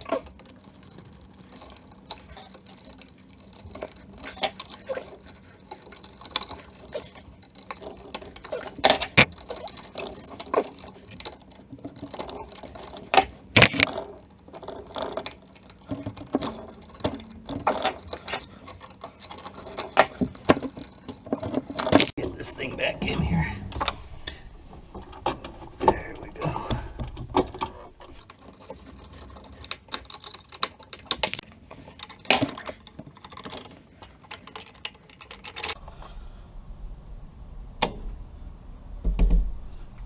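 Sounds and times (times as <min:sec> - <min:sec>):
tools clicking and knocking: 0:00.0 - 0:22.2, 0:27.4 - 0:35.8.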